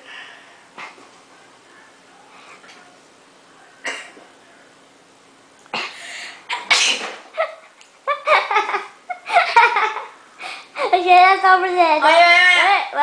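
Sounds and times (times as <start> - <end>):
person sneezing: 5.7 - 7.3.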